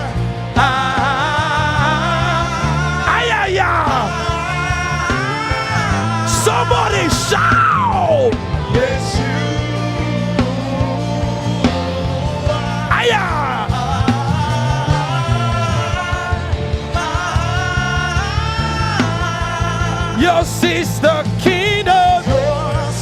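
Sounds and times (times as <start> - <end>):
bass and drums: 0.0 - 23.0
gliding lead melody: 0.0 - 23.0
person singing: 0.0 - 23.0.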